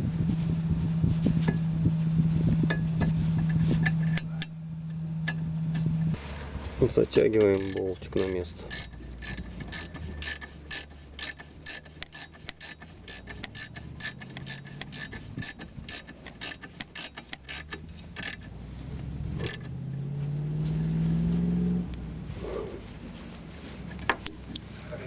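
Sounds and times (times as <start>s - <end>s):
rising hum: 0.0s - 7.2s, 12.9s - 25.0s
ratchet wrench clicking: 7.4s - 18.5s.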